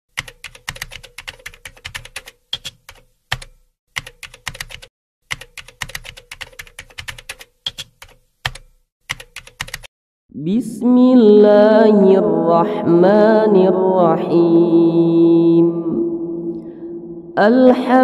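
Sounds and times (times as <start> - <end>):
keyboard typing: 0.2 - 9.9.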